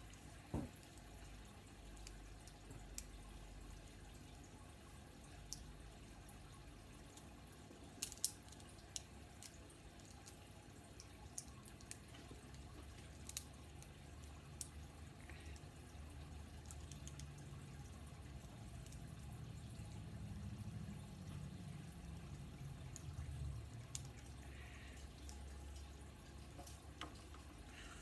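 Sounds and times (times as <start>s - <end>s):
low steady hum: 0.0s - 28.0s
plastic toy parts clicking: 8.0s - 10.4s.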